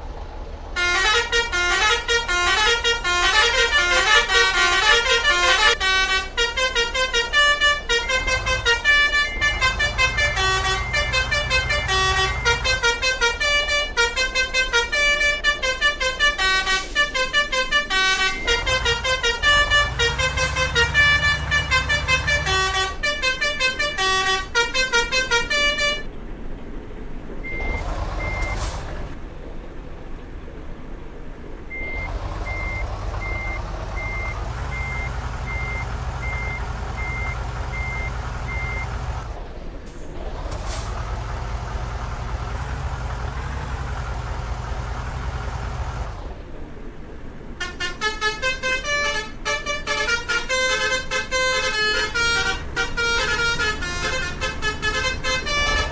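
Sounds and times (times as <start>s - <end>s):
bus engine rumble: 0.0s - 55.9s
multi-tone bus horn melody: 0.8s - 26.2s, 27.4s - 29.2s, 31.7s - 46.5s, 47.5s - 55.9s
reversing alarm beeps: 27.5s - 28.7s, 31.7s - 39.0s.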